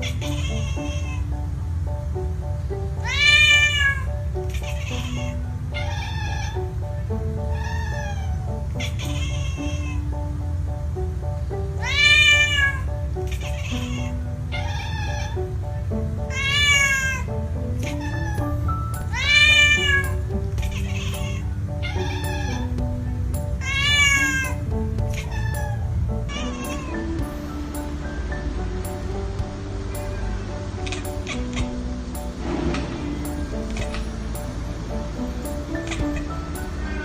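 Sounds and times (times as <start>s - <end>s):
cat meowing: 0.0s - 1.2s, 3.0s - 6.8s, 7.4s - 10.0s, 11.8s - 15.5s, 16.3s - 22.8s, 23.6s - 27.1s, 29.9s - 31.8s, 35.8s - 37.0s
music with held notes and low beat: 0.0s - 37.0s.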